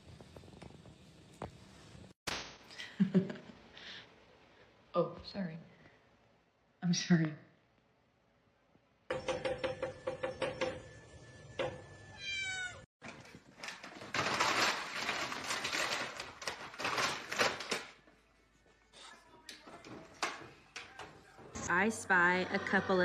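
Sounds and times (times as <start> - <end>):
cat meowing: 12.2 - 12.8.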